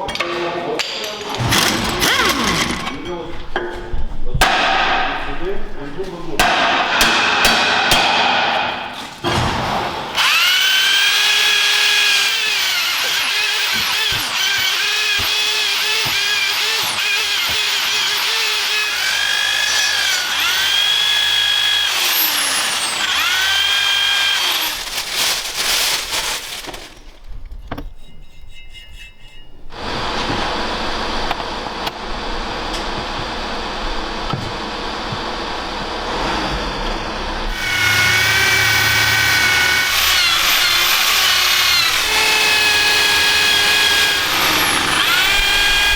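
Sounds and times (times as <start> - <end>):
power tool whining: 1.3 - 3.5, 10.1 - 27.0, 29.7 - 45.9.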